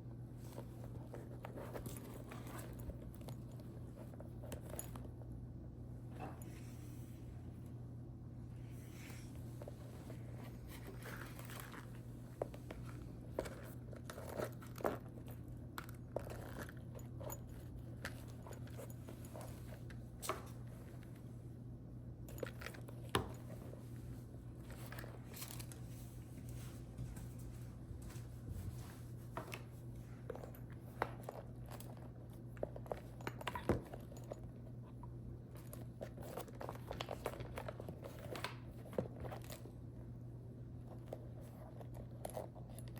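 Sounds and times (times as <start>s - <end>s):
steady low hum: 0.0s - 42.9s
hands handling leather bag: 0.4s - 5.3s, 8.8s - 21.4s, 22.2s - 42.9s.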